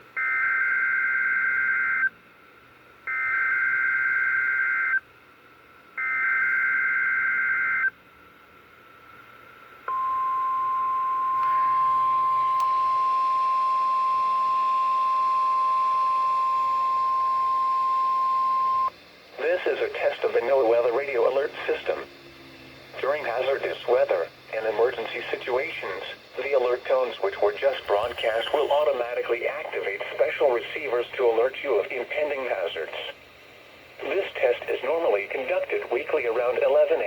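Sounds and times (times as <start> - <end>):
steady single-pitch alert tone: 9.9 - 18.9
radio static hiss: 14.3 - 37.0
digital data warble bursts: 27.5 - 29.0.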